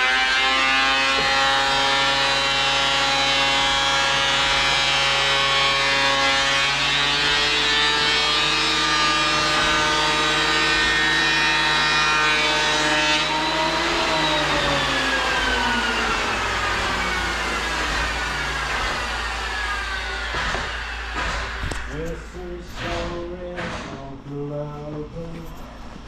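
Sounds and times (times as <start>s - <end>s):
motor humming: 13.3s - 23.8s.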